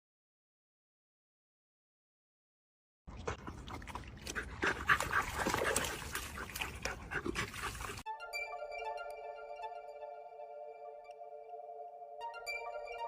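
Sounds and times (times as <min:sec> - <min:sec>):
electronic music: 0:08.1 - 0:13.0.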